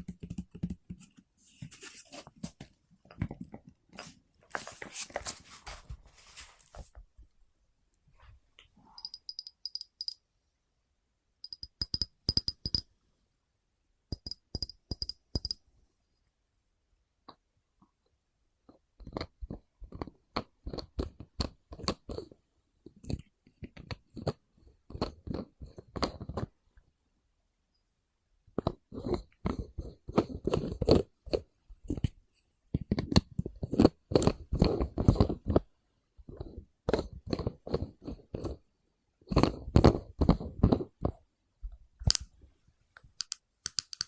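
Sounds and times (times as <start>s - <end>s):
tapping on small hard objects: 14.1s - 15.6s, 43.1s - 44.0s.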